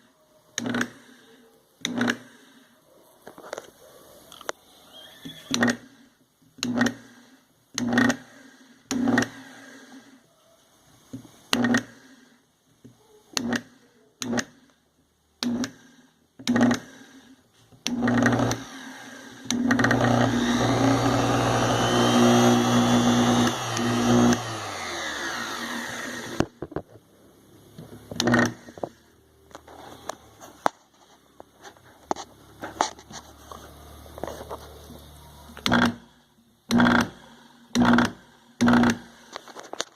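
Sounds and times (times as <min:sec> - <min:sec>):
router motor humming in bursts: 0:17.9 - 0:26.6, 0:28.2 - 0:28.7, 0:35.6 - 0:36.1, 0:36.7 - 0:39.3
router motor whine: 0:17.9 - 0:26.7, 0:28.2 - 0:28.9, 0:35.5 - 0:36.0, 0:36.7 - 0:39.5.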